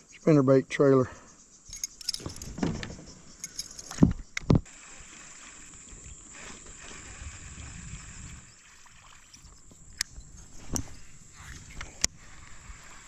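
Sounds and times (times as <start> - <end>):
kayak gear rustling and knocking: 1.7 - 4.3, 9.2 - 12.7.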